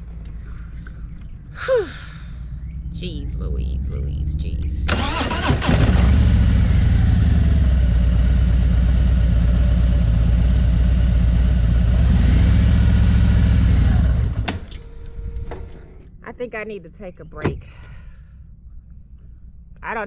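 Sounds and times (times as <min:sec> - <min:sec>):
motorcycle engine running: 0:02.4 - 0:14.7.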